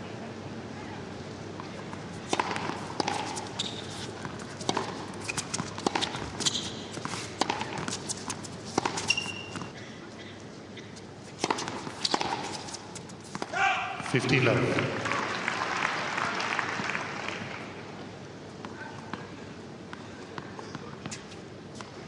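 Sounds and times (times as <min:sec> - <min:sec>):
tennis ball struck and bouncing: 0:02.3 - 0:03.6, 0:04.2 - 0:09.7, 0:11.4 - 0:12.6
shoe squeaks: 0:03.1 - 0:09.7.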